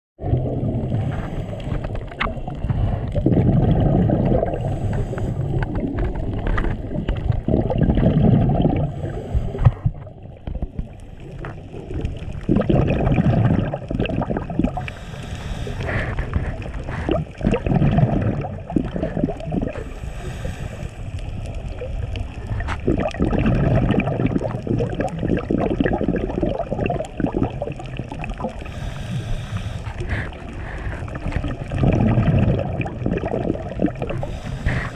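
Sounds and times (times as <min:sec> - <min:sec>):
bubbles rumbling underwater: 0:00.2 - 0:34.9
regulator inhale hiss: 0:01.0 - 0:02.0, 0:04.6 - 0:05.8, 0:08.8 - 0:09.9, 0:14.7 - 0:17.4, 0:19.8 - 0:21.3, 0:28.6 - 0:31.4, 0:34.1 - 0:34.9.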